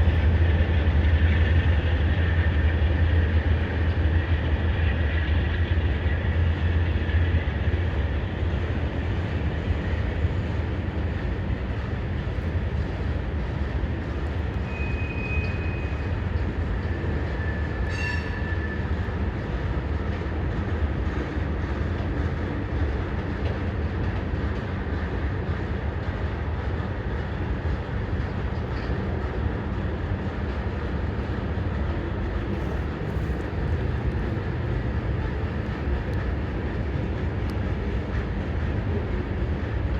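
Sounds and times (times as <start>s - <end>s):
freight train wheels rumbling: 0.0s - 39.9s.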